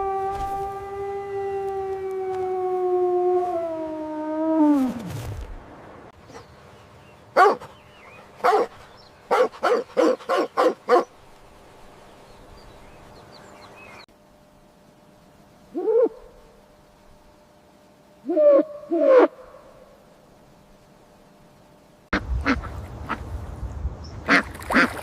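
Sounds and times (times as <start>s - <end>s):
dog barking: 7.4s - 7.7s, 8.4s - 11.1s.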